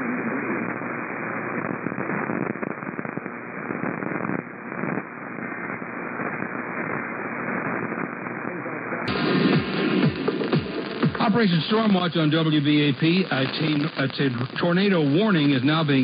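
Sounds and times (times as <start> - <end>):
radio static hiss with crackling: 0.0 - 16.0.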